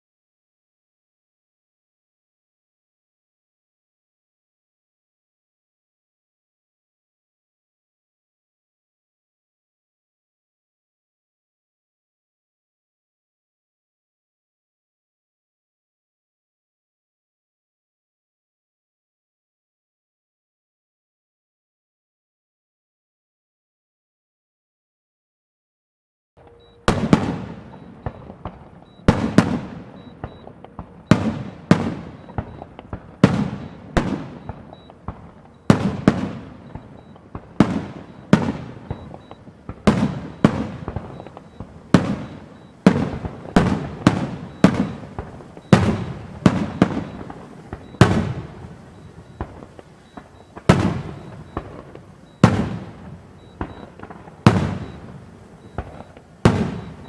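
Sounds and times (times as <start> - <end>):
fireworks bangs with echo: 26.4 - 57.0.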